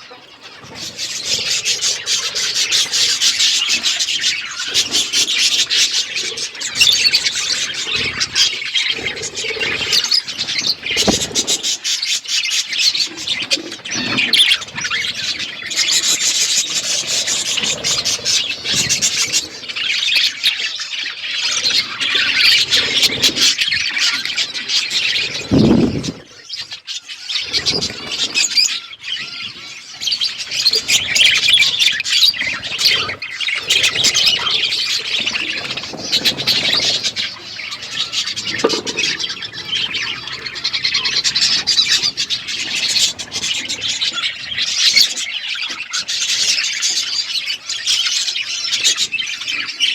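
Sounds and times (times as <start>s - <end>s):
birds chirping and chattering: 0.0s - 49.9s.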